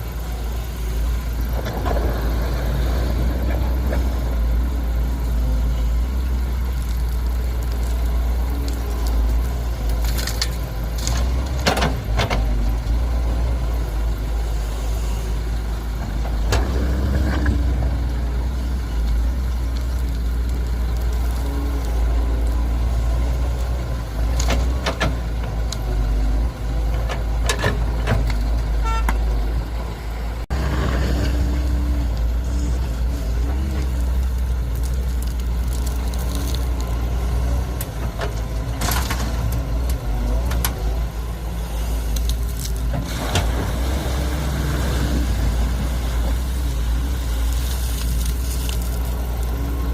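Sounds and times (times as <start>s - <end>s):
heavy diesel engines droning: 0.0s - 49.9s.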